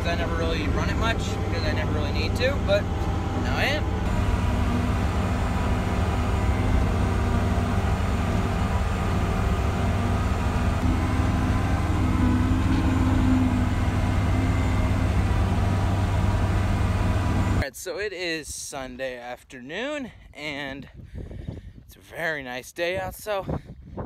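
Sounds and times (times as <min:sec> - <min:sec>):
loader engine droning: 0:00.0 - 0:17.6.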